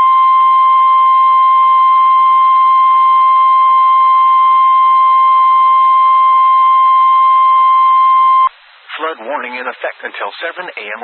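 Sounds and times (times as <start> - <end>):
loud steady warning beep: 0.0 - 8.5.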